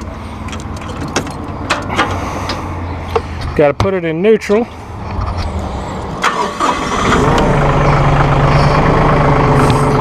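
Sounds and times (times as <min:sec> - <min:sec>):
tractor diesel engine starting: 0:05.3 - 0:10.0.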